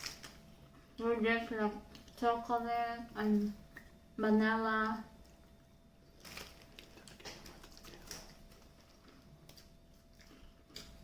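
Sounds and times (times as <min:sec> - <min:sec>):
wafer snack crunching: 0:06.1 - 0:11.0.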